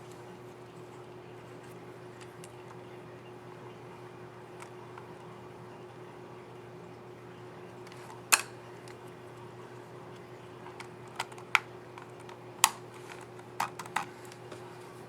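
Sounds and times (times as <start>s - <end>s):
keyboard keycap clicking: 10.7s - 14.4s.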